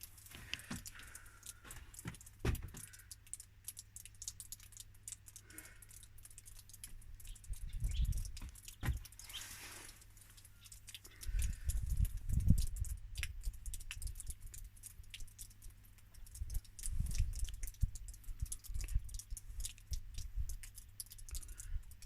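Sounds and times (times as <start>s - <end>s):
sharp ticks: 0.0s - 22.0s
wind buffeting microphone: 7.3s - 9.0s, 11.2s - 14.1s, 16.4s - 20.6s.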